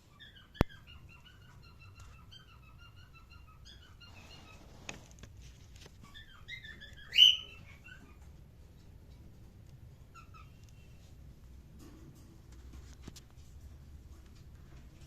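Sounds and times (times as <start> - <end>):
cockatiel chirping: 0.0 - 4.8, 6.0 - 8.3, 10.1 - 10.6.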